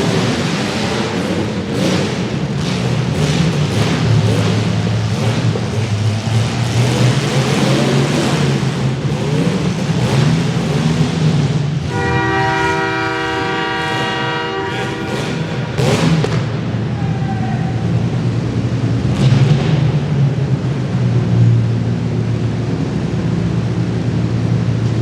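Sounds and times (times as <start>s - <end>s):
car engines revving: 0.0s - 25.0s
loud horn: 11.8s - 16.3s.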